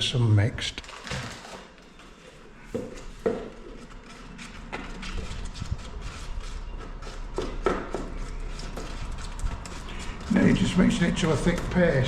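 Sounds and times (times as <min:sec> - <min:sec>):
filler knife scraping tub: 0:03.0 - 0:12.0.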